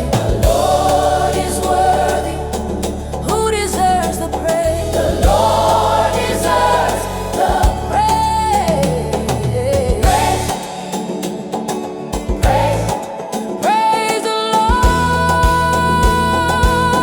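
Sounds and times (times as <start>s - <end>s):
heavy bass line: 0.0s - 10.6s, 12.4s - 13.0s, 14.8s - 17.0s
choir singing gospel: 0.0s - 17.0s
drums: 0.0s - 17.0s.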